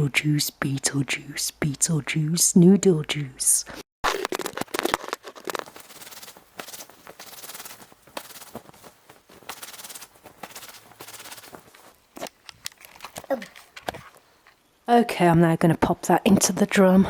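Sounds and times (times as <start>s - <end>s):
fabric rubbing and rustling: 4.3s - 14.4s.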